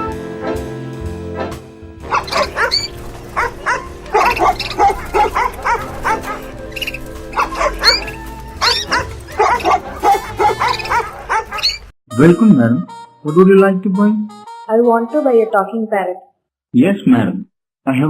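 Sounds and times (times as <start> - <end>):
background music: 0.0 - 16.2
cartoon animal calls: 2.1 - 11.9.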